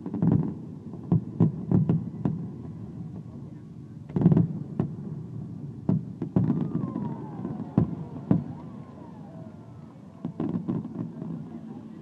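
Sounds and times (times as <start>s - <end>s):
fireworks bangs: 0.0s - 3.4s, 4.0s - 12.0s.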